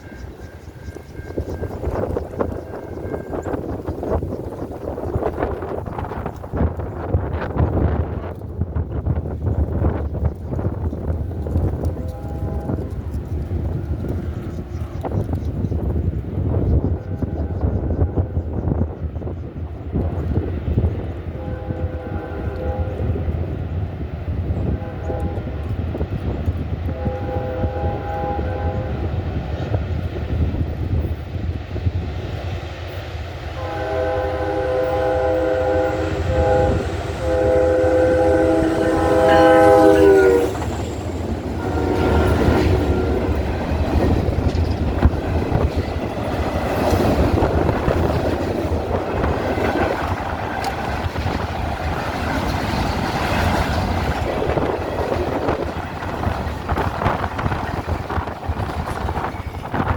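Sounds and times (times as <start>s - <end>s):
train rumble and wheel clatter: 0.0s - 59.9s
train horn blasts: 11.4s - 13.1s, 17.0s - 18.7s, 21.3s - 23.3s, 24.6s - 25.8s, 26.8s - 29.2s, 33.6s - 44.2s.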